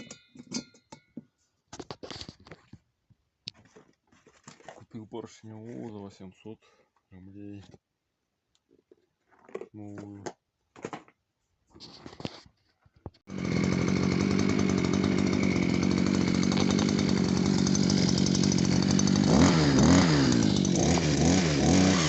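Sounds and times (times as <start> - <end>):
grass trimmer engine revving: 13.3 - 22.0.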